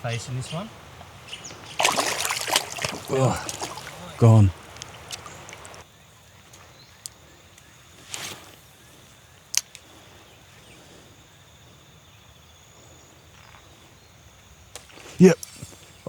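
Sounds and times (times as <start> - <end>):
creek hiss: 0.0 - 5.9, 7.0 - 12.0, 12.6 - 16.0
small sharp clicks: 9.5 - 9.9.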